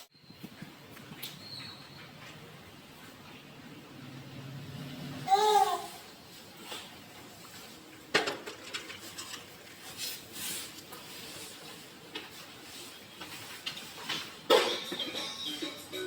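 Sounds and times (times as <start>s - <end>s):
objects knocking and clattering: 8.1s - 9.8s.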